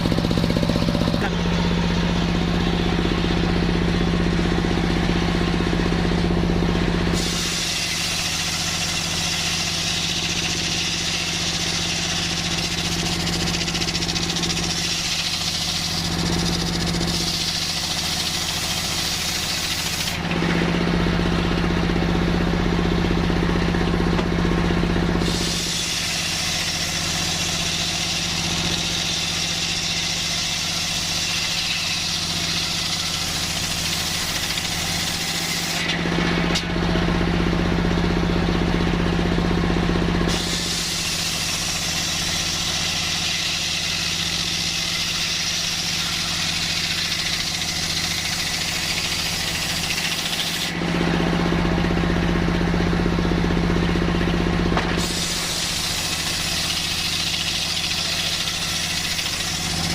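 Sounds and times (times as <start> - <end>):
saw blade cutting timber: 0.0 - 22.4, 23.6 - 37.0, 40.2 - 51.8, 53.9 - 59.9
circular saw blade humming: 0.0 - 36.8, 40.2 - 52.7, 53.8 - 59.9.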